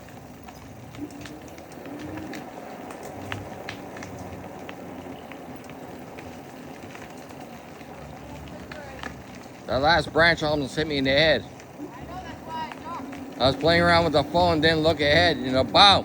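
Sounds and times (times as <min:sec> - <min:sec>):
bicycle tyres rolling on dirt: 0:00.0 - 0:16.0.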